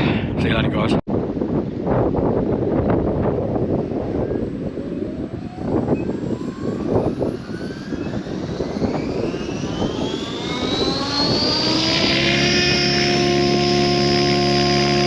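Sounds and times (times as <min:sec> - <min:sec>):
wind buffeting microphone: 0:00.0 - 0:15.0
rc helicopter motor whine: 0:04.4 - 0:15.0.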